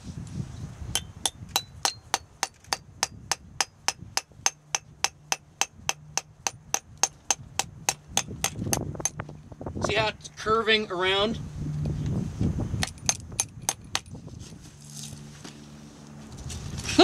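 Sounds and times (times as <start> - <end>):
hammer striking steel wedge: 0.9 - 9.2.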